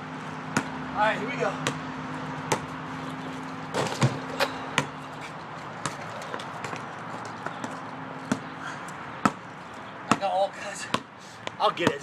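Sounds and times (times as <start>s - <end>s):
basketball bouncing: 0.5s - 0.8s, 1.6s - 2.8s, 3.7s - 8.5s, 9.2s - 10.3s.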